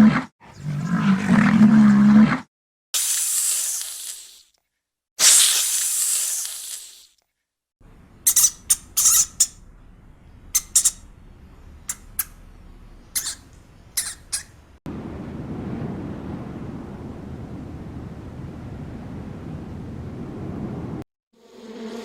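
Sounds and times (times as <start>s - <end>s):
hiss: 3.0s - 4.5s, 5.2s - 7.2s
bird squawking: 8.2s - 9.7s, 10.4s - 11.2s, 11.8s - 14.7s.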